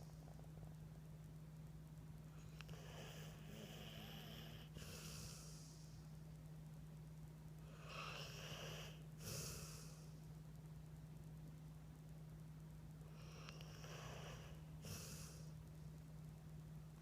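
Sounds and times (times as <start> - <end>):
steady low hum: 0.0 - 17.0
faint snoring: 2.4 - 6.0, 7.6 - 10.2, 13.1 - 15.5.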